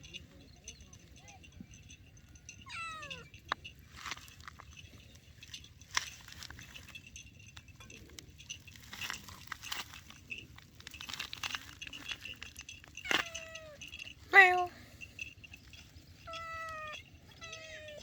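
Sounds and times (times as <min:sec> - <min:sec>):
cat meowing: 0:02.7 - 0:03.3, 0:13.1 - 0:13.8, 0:16.3 - 0:18.0.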